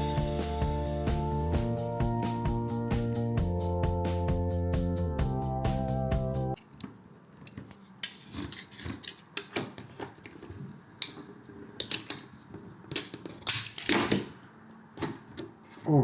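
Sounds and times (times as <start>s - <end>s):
hand tools scraping and knocking: 7.5s - 13.6s.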